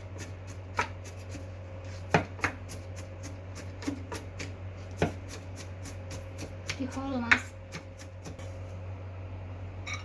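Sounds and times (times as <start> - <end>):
steady low hum: 0.0 - 10.0.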